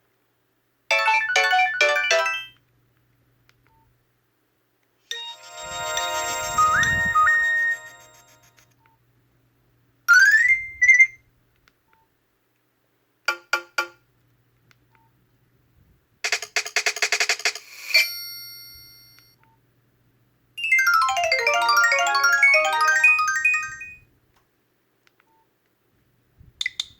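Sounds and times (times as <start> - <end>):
phone notification tones: 0.9 - 2.6, 5.1 - 8.6, 20.8 - 24.0.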